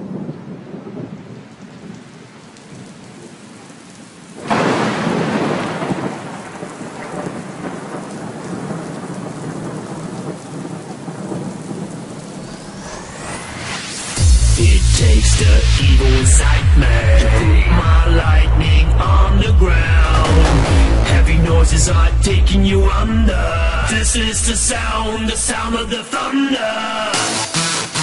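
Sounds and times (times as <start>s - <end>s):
rolling thunder: 0.0s - 2.1s, 4.3s - 25.9s
heavy rain: 0.0s - 28.0s
loud thunderclap: 4.4s - 25.8s.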